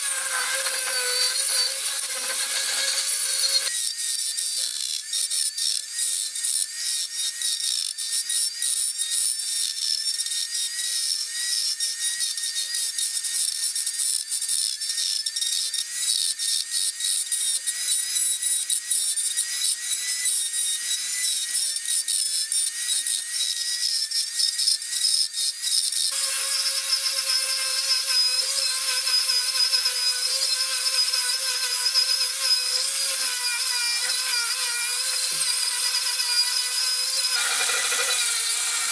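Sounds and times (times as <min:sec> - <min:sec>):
rasping scrape on wood: 0:00.0 - 0:03.7, 0:26.1 - 0:38.9
power tool whining: 0:00.0 - 0:03.9, 0:25.4 - 0:38.9.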